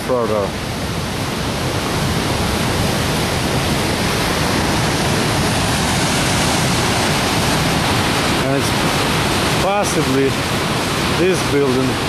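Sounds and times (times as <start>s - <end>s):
rushing floodwater: 0.0s - 12.0s.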